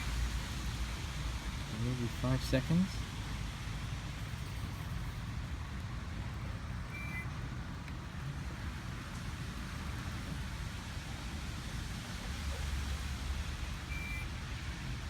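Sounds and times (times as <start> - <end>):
short electronic beep: 6.9 - 7.3, 13.9 - 14.3.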